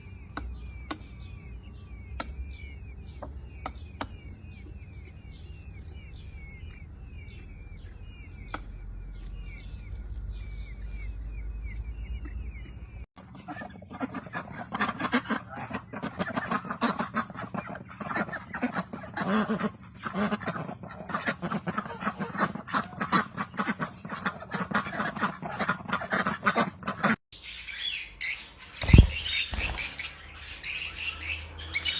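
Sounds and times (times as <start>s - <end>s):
ducks quacking: 0.0s - 10.0s, 10.6s - 27.2s
rapid high bird chirps: 0.0s - 13.1s, 27.4s - 31.9s.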